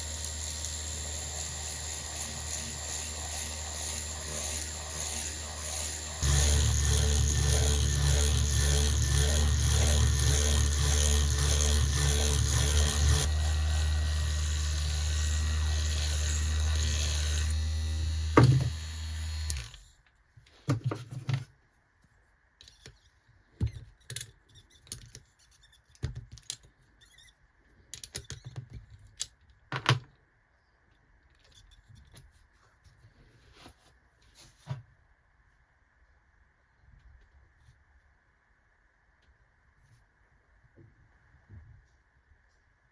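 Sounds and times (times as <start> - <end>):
loud steady low hum: 6.2 - 14.8.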